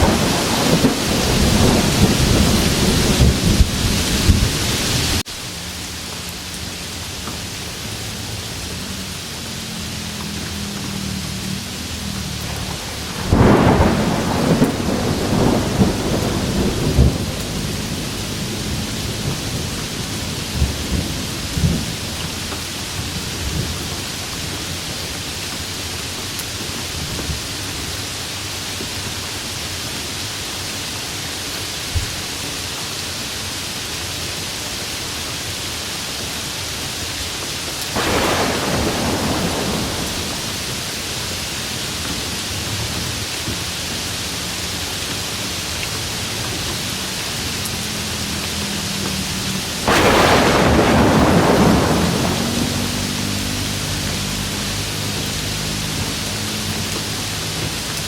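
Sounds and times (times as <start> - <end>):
thunder crackling and rumbling: 0.0 - 27.6, 37.8 - 44.5, 45.1 - 58.0
heavy rain: 0.0 - 58.0.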